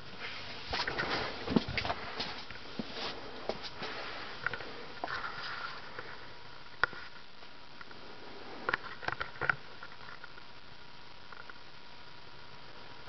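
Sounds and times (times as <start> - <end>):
ceiling fan humming: 0.0 - 13.0.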